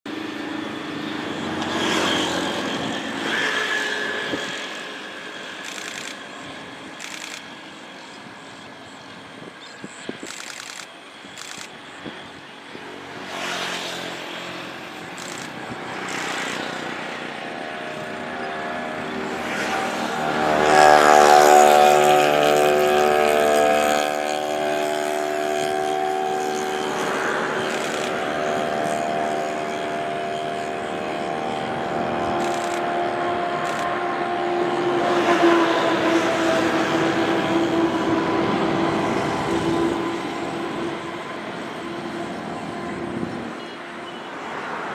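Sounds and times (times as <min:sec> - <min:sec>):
motor vehicles passing: 0:00.3 - 0:07.6, 0:12.7 - 0:44.9.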